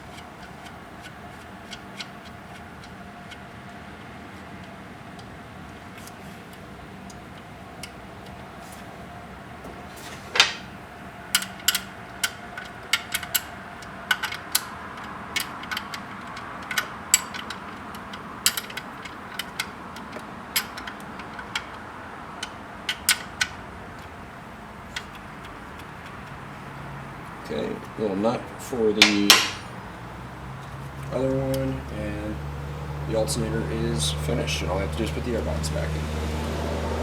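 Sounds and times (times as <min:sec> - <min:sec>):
metal clack: 0:09.7 - 0:10.8, 0:28.9 - 0:29.8
ratchet wrench clicking: 0:11.3 - 0:21.8.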